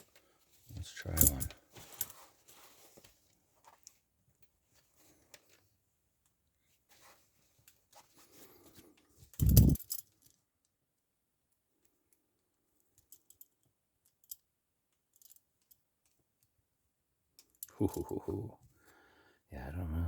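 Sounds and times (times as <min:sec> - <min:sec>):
handling noise: 0:09.4 - 0:09.9.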